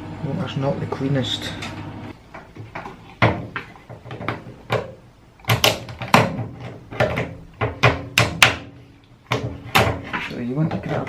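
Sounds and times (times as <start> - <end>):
plastic pump and hoses knocking: 2.3 - 11.0.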